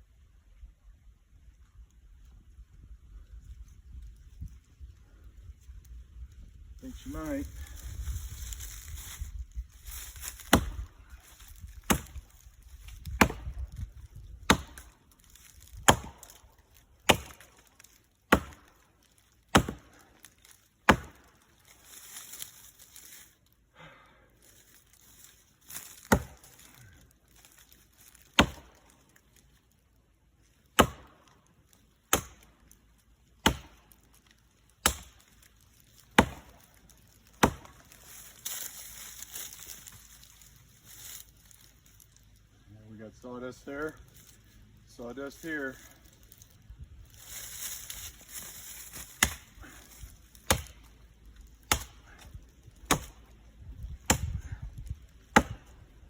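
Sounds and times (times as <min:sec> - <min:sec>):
axe chopping tree trunk: 0:10.0 - 0:22.5, 0:25.7 - 0:26.8, 0:27.6 - 0:29.0, 0:30.6 - 0:40.0, 0:48.1 - 0:56.0.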